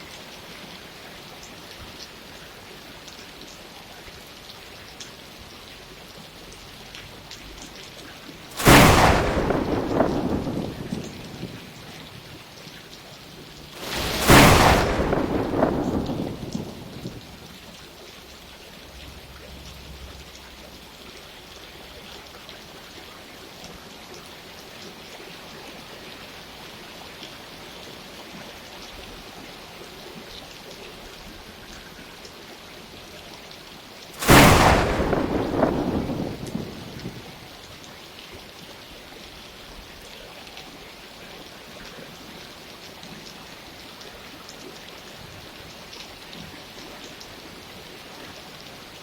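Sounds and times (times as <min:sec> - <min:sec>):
rain hiss: 0:00.0 - 0:30.5, 0:34.0 - 0:40.0
thunderclap rumbling: 0:08.5 - 0:12.4, 0:13.8 - 0:17.6, 0:34.2 - 0:37.5.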